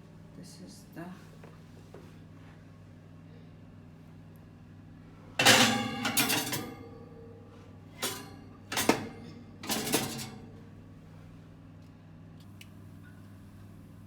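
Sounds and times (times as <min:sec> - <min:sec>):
metal kitchenware clattering: 0:05.4 - 0:06.8, 0:08.0 - 0:10.4.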